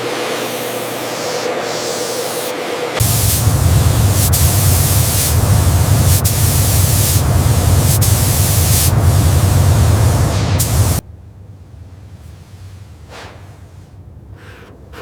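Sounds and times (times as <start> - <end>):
loud hissing spray: 3.0 - 11.0
low rumble: 3.0 - 11.0.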